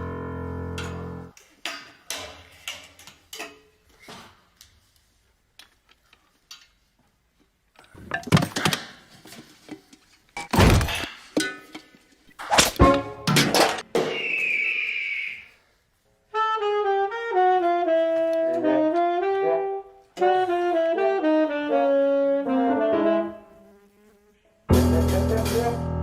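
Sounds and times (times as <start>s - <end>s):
clattering hits and crashes: 12.5s - 14.0s.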